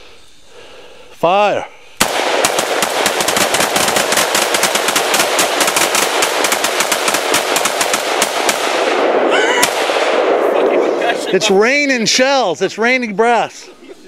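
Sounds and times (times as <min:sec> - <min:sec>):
rapid rifle gunshots: 0:02.0 - 0:11.1.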